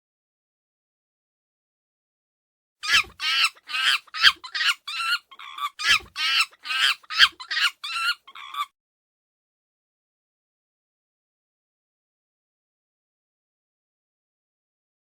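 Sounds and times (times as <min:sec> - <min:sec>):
monkey cries: 0:02.8 - 0:08.7.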